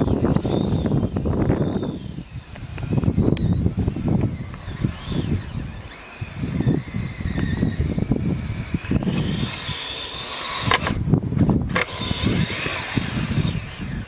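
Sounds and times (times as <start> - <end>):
electric motor whining: 0.0 - 14.0.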